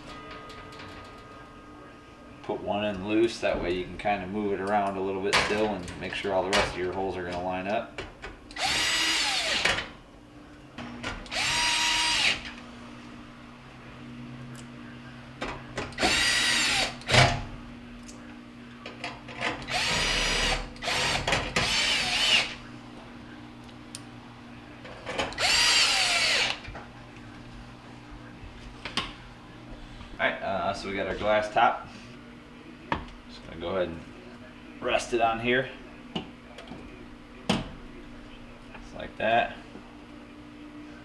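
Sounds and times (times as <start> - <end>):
power drill driving screws: 8.6 - 9.9, 11.3 - 12.5, 16.0 - 17.1, 19.7 - 22.6, 25.4 - 26.6.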